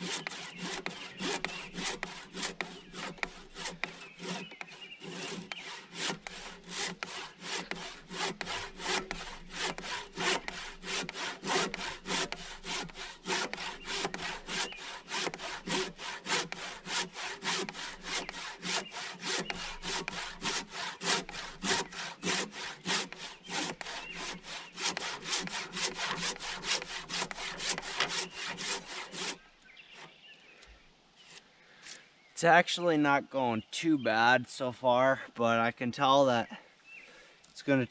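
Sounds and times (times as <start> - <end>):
handsaw cutting through log: 0.0 - 30.1.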